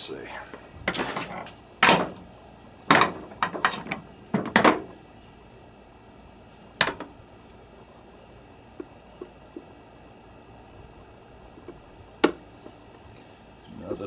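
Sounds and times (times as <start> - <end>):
parts and tools clicking and knocking: 2.9 - 5.0, 6.5 - 8.2.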